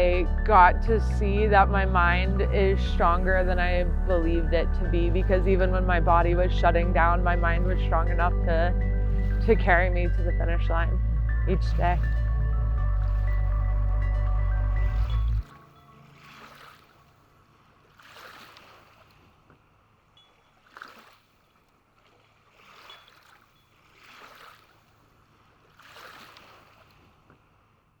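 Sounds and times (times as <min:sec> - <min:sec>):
water washing in soft swells: 0:14.6 - 0:28.0.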